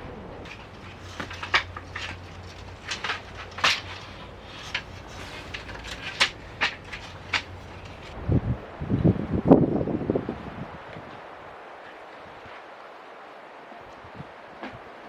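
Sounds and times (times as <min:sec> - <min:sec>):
camping gear clacking: 0:00.5 - 0:08.2.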